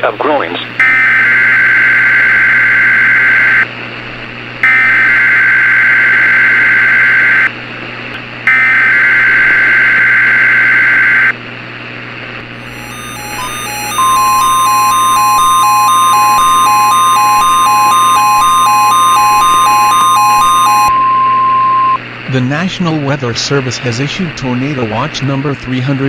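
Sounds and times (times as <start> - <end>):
radio hiss: 0.0 - 0.8
beeping electronic tune: 12.6 - 22.0
screechy two-tone digital data: 12.6 - 22.0.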